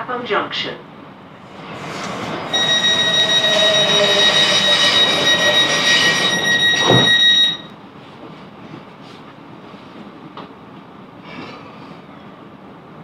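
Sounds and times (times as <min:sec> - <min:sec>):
train doors thudding shut: 0:01.6 - 0:07.7
high electronic warning tone: 0:02.5 - 0:07.7.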